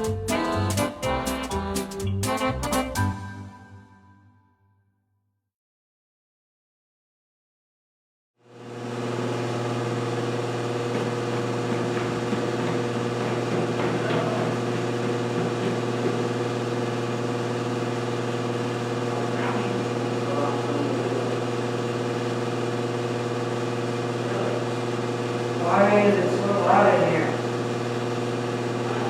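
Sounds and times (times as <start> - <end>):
steady mechanical hum: 8.5 - 29.0
faint knocks: 10.9 - 16.4.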